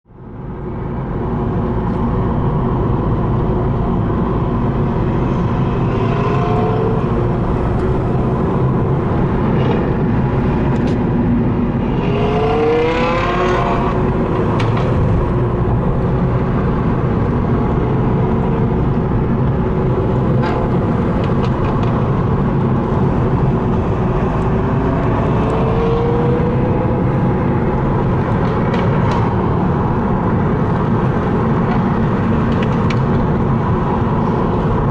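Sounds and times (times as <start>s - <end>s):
car engine accelerating: 1.3s - 34.9s
exhaust pops and crackles: 31.6s - 33.3s.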